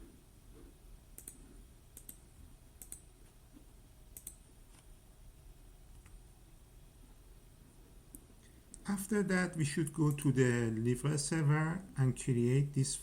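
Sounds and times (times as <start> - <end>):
room hum: 0.0 - 13.0
faint computer clicks: 1.2 - 1.4, 2.0 - 2.2, 2.8 - 3.1, 4.1 - 4.8.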